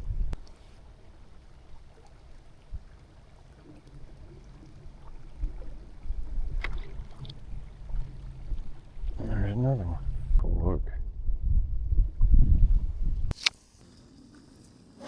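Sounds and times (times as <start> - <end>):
low outdoor rumble: 0.0 - 13.3
sharp click: 13.3 - 13.6.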